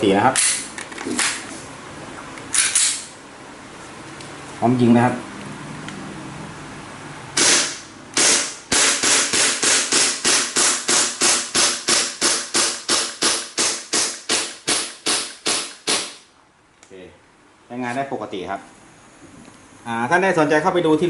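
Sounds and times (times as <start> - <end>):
airsoft pistol shots: 7.4 - 16.2.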